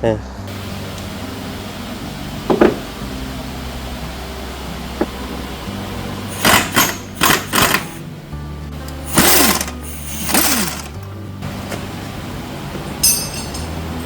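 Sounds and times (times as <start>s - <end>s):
background music: 0.0s - 14.0s
impact wrench rattling bursts: 6.3s - 8.0s, 9.1s - 11.0s.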